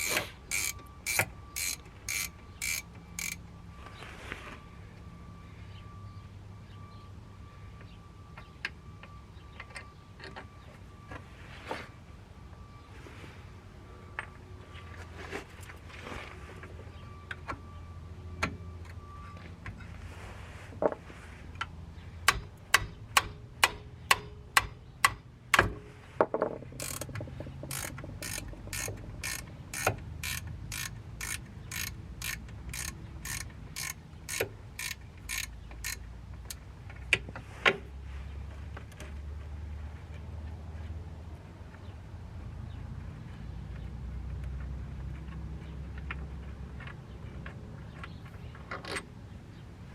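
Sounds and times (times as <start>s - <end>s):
ratchet wrench clicking: 0.0s - 3.4s, 26.8s - 36.6s.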